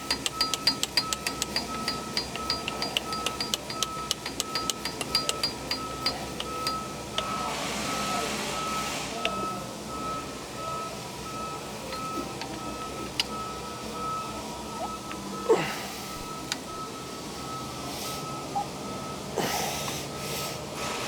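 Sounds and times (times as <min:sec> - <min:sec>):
vehicle backup alarm beeping: 0:00.0 - 0:21.0.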